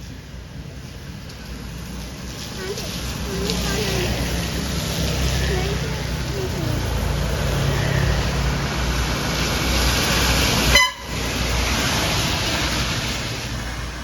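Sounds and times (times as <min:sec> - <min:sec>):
highway traffic rushing: 0:00.0 - 0:14.0
short horn toot: 0:10.7 - 0:11.2.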